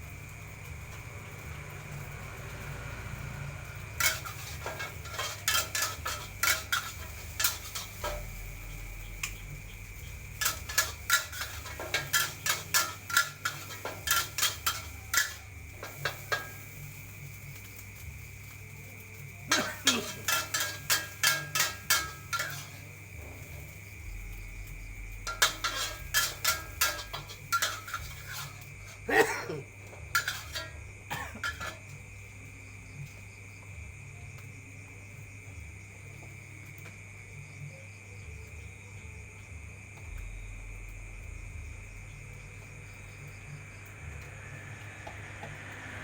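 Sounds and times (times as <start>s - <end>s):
metal spatula clanking on wok: 4.0s - 17.1s, 19.5s - 23.7s, 25.2s - 32.0s.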